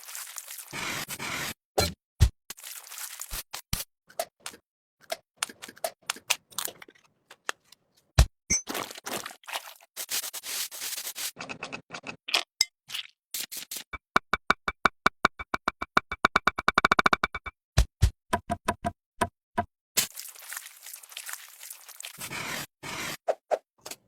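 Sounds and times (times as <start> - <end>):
scattered taps: 14.2 - 17.6.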